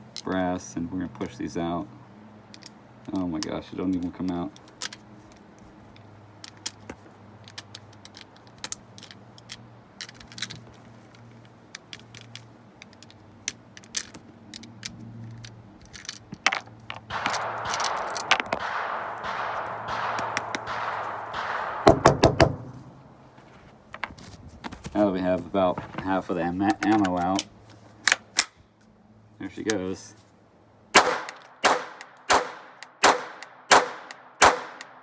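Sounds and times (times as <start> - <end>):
loud sharp clacks: 16.9 - 23.6.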